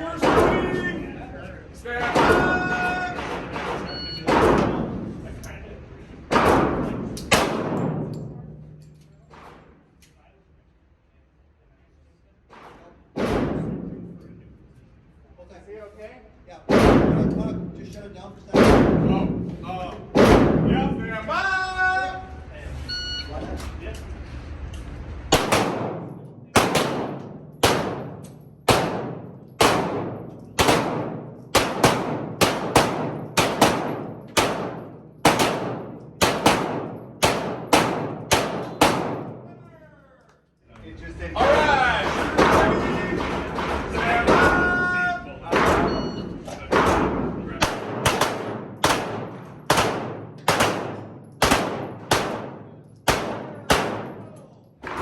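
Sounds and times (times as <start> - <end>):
pistol shots echoing: 2.0 - 5.1, 6.3 - 9.6, 25.3 - 39.6, 45.5 - 55.0.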